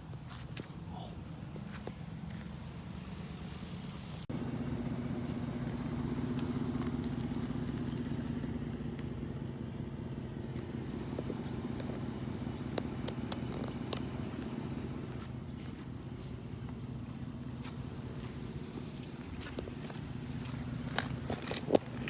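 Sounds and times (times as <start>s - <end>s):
vehicle engine humming: 0.0s - 22.0s.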